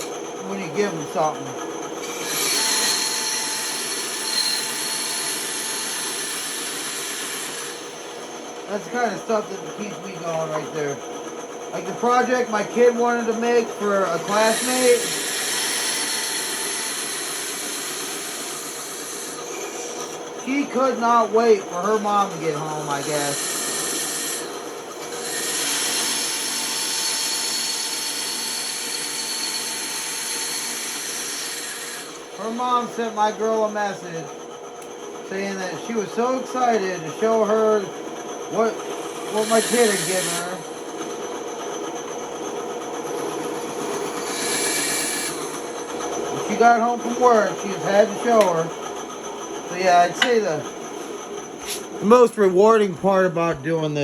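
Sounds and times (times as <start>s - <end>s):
power tool whirring on wood: 0.0s - 54.0s.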